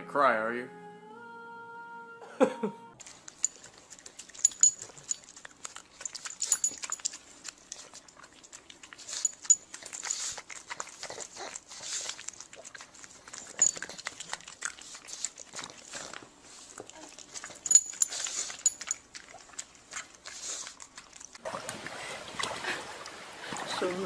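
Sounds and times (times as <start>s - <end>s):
dog making noisy sounds: 3.5s - 21.4s.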